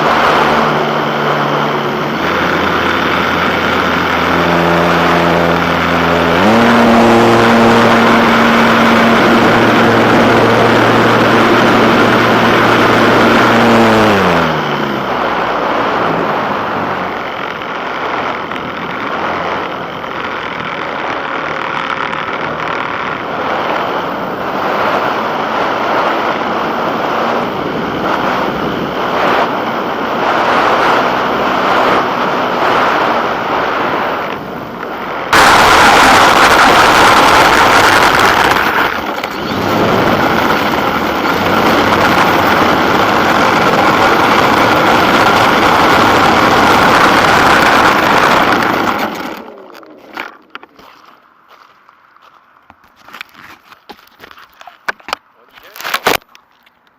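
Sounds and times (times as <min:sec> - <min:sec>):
engine running: 0:00.0 - 0:56.9
wind rushing: 0:23.2 - 0:49.4.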